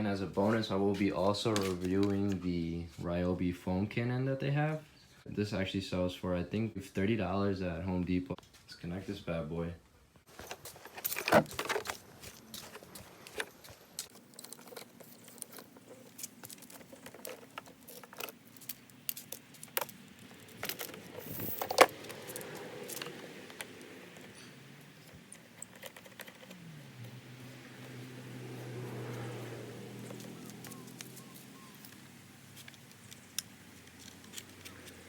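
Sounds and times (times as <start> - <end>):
metallic clicks and rattles: 12.6 - 27.2, 30.0 - 35.0.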